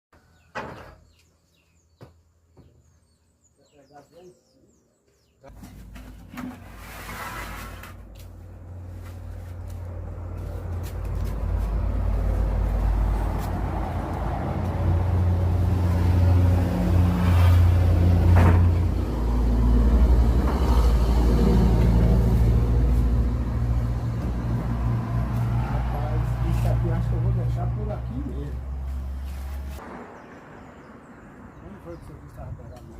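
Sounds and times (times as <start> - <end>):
engine running low rumble: 7.5 - 29.8.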